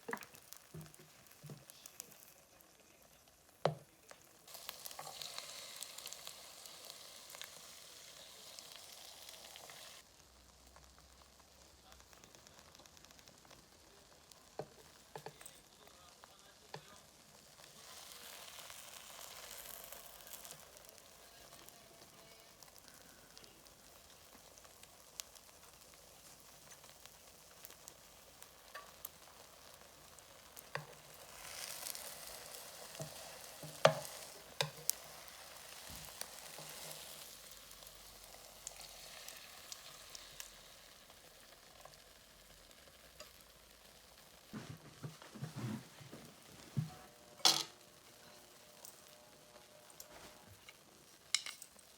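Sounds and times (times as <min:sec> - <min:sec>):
utensil tapping pan: 0:00.0 - 0:02.3, 0:03.6 - 0:04.2, 0:14.5 - 0:15.7, 0:30.6 - 0:35.3, 0:50.7 - 0:51.8
food sizzling in frying pan: 0:00.0 - 0:51.9.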